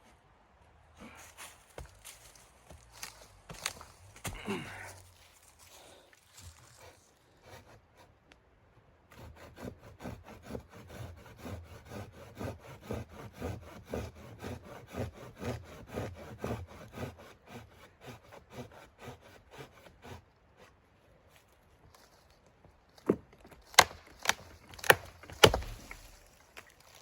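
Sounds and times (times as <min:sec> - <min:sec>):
hand saw cutting wood: 0:06.7 - 0:08.2, 0:09.1 - 0:20.8, 0:23.7 - 0:26.2.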